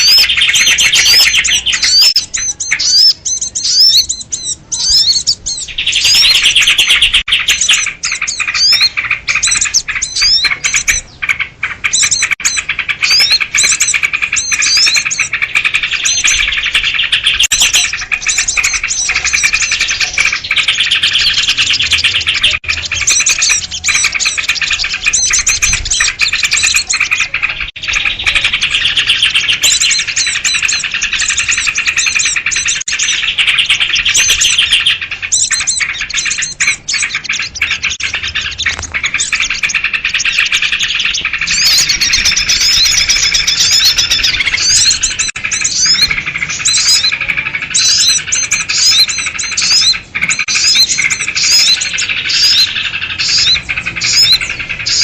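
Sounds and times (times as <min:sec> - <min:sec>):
small birds chirping and twittering: 0:00.0 - 0:55.0.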